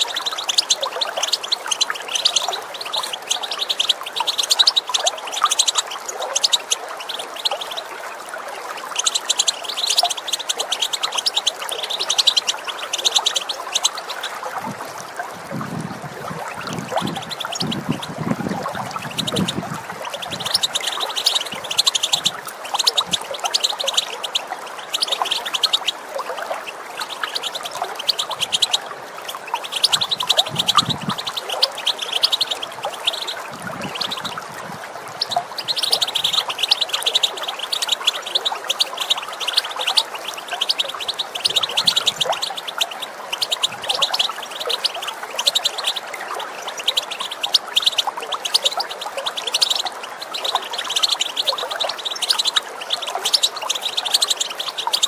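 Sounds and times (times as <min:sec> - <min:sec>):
finches twittering: 0:00.0 - 0:14.8, 0:16.5 - 0:55.0
running water with gurgles: 0:00.0 - 0:55.0.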